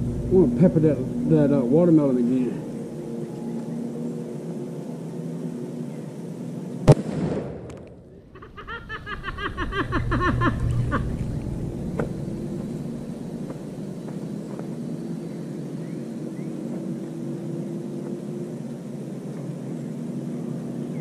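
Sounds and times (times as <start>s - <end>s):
rifle shot: 6.9s - 8.0s.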